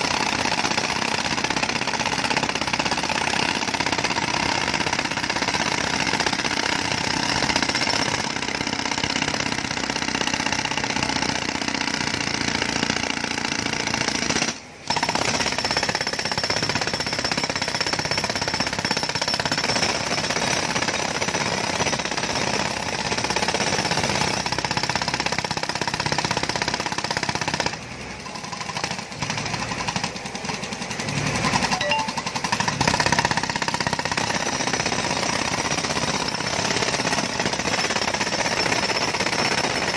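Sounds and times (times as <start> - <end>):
jackhammer hammering: 0.0 - 39.9.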